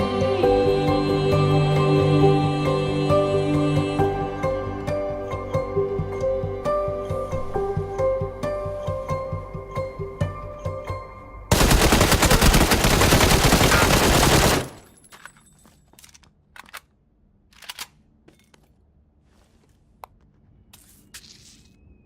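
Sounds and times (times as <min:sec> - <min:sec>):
soft background music: 0:00.0 - 0:12.0
loud dense crackling rattle: 0:11.5 - 0:14.8.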